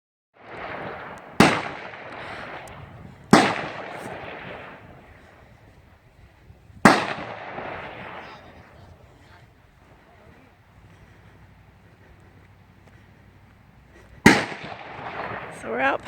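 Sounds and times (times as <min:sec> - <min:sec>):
gunshots with echo: 0:00.4 - 0:05.5, 0:06.8 - 0:09.2, 0:14.2 - 0:16.0.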